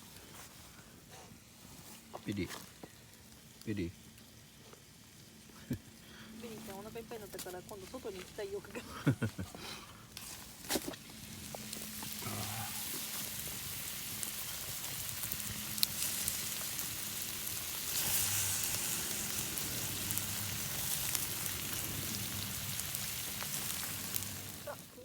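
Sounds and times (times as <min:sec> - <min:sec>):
food sizzling on a griddle: 0:00.0 - 0:25.0
crackles and pops: 0:10.1 - 0:25.0.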